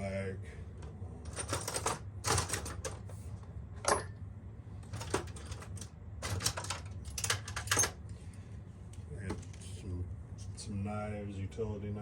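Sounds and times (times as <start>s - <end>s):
screwdrivers clattering in plastic organizer: 1.3s - 3.0s, 4.9s - 8.0s.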